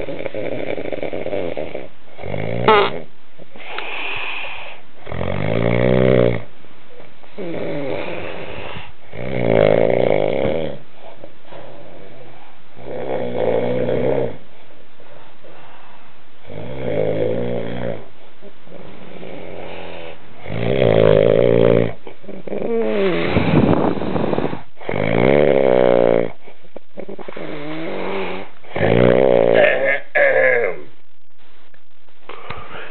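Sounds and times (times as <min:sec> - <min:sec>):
man snoring loudly: 0:00.0 - 0:03.0, 0:05.0 - 0:06.5, 0:07.4 - 0:10.8, 0:12.8 - 0:14.4, 0:16.4 - 0:18.0, 0:18.8 - 0:26.4, 0:27.4 - 0:29.8.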